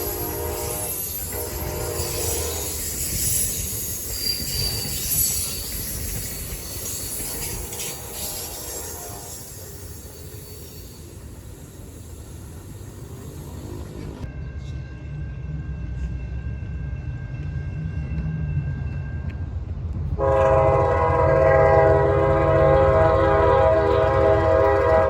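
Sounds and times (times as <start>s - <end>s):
train horn: 0.0s - 2.8s, 7.4s - 9.6s, 20.2s - 25.0s
wheel squeals: 0.0s - 14.2s
train wheels rumbling on rails: 0.0s - 25.0s.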